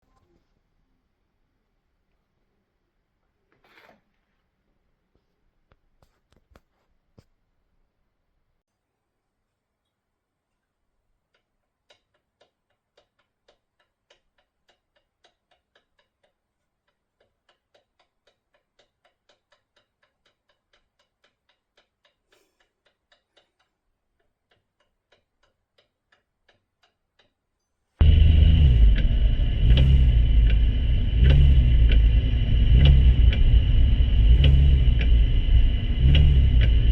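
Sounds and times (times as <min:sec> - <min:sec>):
faint clicking: 0:09.8 - 0:36.9
car engine running with whine: 0:28.0 - 0:36.9.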